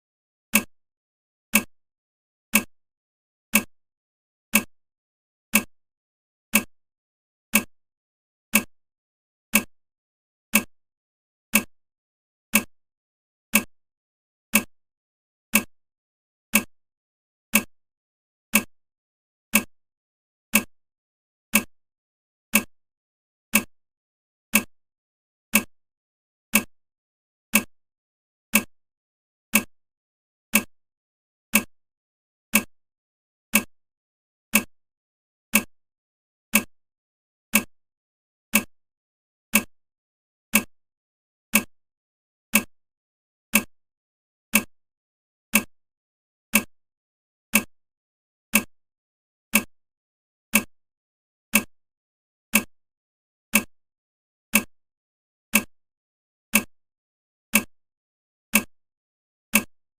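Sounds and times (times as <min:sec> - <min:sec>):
timer ticking: 0:00.5 - 0:00.7, 0:01.5 - 0:01.7, 0:02.5 - 0:02.7, 0:03.5 - 0:03.7, 0:04.5 - 0:04.7, 0:05.5 - 0:05.7, 0:06.5 - 0:06.7, 0:07.5 - 0:07.7, 0:08.5 - 0:08.7, 0:09.5 - 0:09.7, 0:10.5 - 0:10.7, 0:11.5 - 0:11.7, 0:12.5 - 0:12.7, 0:13.5 - 0:13.7, 0:14.5 - 0:14.7, 0:15.5 - 0:15.7, 0:16.5 - 0:16.7, 0:17.5 - 0:17.7, 0:18.5 - 0:18.7, 0:20.5 - 0:20.7, 0:21.5 - 0:21.7, 0:22.5 - 0:22.7, 0:23.5 - 0:23.7, 0:24.5 - 0:24.7, 0:25.5 - 0:25.7, 0:26.5 - 0:26.7, 0:27.5 - 0:27.7, 0:28.5 - 0:28.7, 0:29.5 - 0:29.7, 0:30.5 - 0:30.7, 0:31.5 - 0:31.7, 0:32.5 - 0:32.7, 0:33.5 - 0:33.7, 0:34.5 - 0:34.7, 0:35.5 - 0:35.7, 0:36.5 - 0:36.7, 0:37.5 - 0:37.7, 0:38.5 - 0:38.7, 0:39.5 - 0:39.7, 0:40.5 - 0:40.7, 0:41.5 - 0:41.7, 0:42.5 - 0:42.7, 0:43.5 - 0:43.7, 0:44.5 - 0:44.7, 0:45.5 - 0:45.7, 0:46.5 - 0:46.7, 0:47.5 - 0:47.7, 0:48.5 - 0:48.7, 0:49.5 - 0:49.7, 0:50.5 - 0:50.7, 0:51.5 - 0:51.7, 0:52.5 - 0:52.7, 0:53.5 - 0:53.7, 0:54.5 - 0:54.7, 0:55.5 - 0:55.7, 0:56.5 - 0:56.7.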